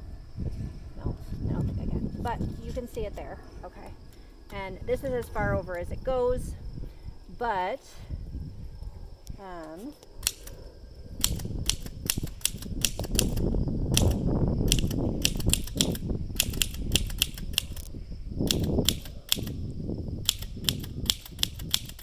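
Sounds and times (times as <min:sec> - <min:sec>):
typewriter keystrokes: 0:20.3 - 0:22.0.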